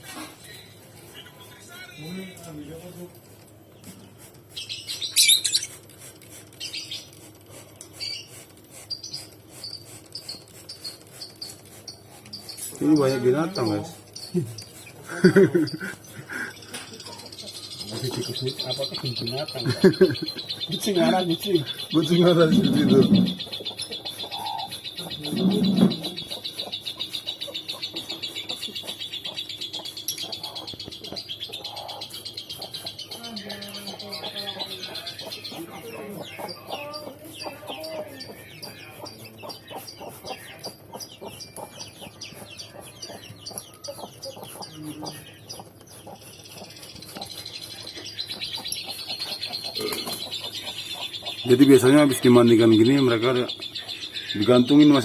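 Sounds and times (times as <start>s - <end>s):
small animal chirping rapidly: 1.1s - 55.0s
lovebirds squawking: 4.0s - 55.0s
short high bird chirps: 4.7s - 5.7s.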